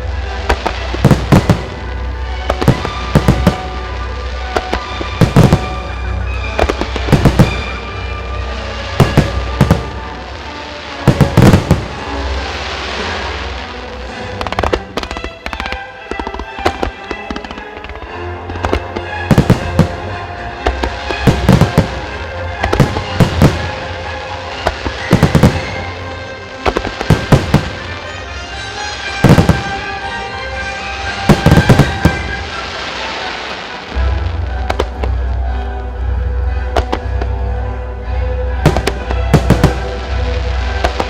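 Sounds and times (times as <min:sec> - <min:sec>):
music: 0:00.0 - 0:41.0
firework shells bursting: 0:14.4 - 0:24.0, 0:31.3 - 0:32.6.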